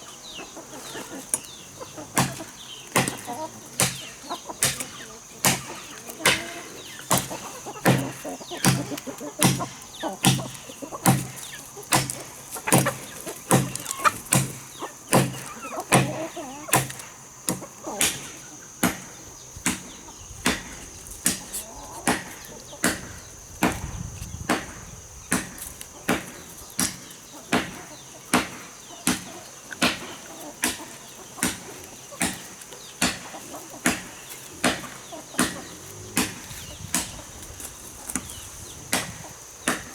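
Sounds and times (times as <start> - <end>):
steady high-pitched hiss: 0.0 - 39.9
blade chopping wood: 2.2 - 19.1, 25.4 - 37.2, 38.1 - 39.9.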